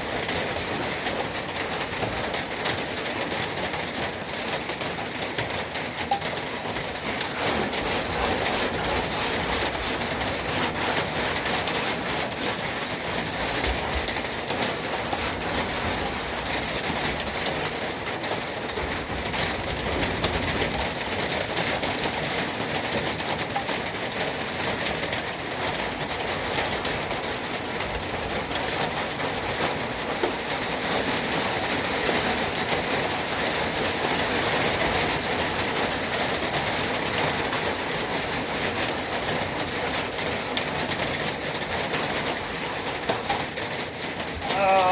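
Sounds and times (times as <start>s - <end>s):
sandpaper scratching on metal: 0.0s - 3.0s, 6.9s - 20.9s, 25.1s - 43.9s.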